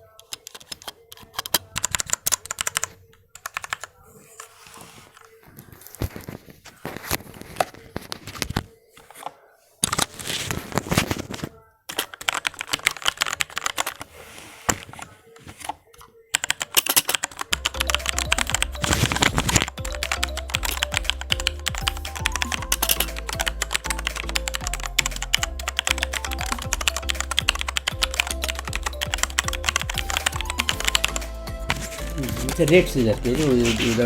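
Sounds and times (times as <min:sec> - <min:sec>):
mechanical keyboard typing: 0:00.0 - 0:03.9, 0:11.9 - 0:14.1, 0:15.6 - 0:34.0
background music with bass line: 0:17.6 - 0:34.0.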